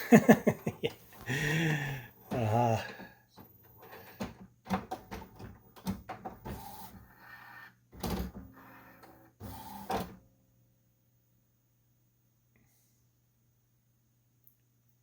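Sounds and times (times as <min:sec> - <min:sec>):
printer whirring: 0:03.9 - 0:07.0, 0:08.0 - 0:10.1.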